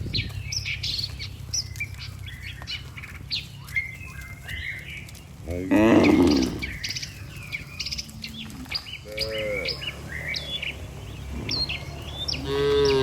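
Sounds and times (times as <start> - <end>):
small birds chirping: 0.0 - 13.0
cow mooing: 5.5 - 6.8, 12.3 - 13.0.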